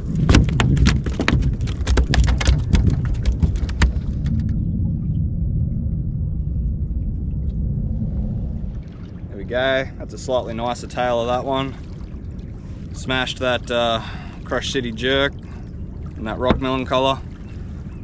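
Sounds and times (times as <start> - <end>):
steady low rumble: 0.0 - 18.0
sharp clicks and knocks: 0.2 - 4.6.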